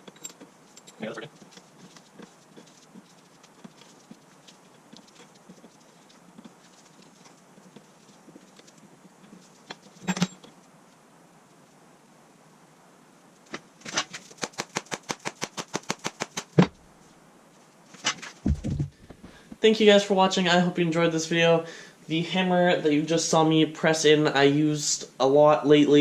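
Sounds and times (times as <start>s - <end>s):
fast run of sharp clicks: 13.8s - 16.7s.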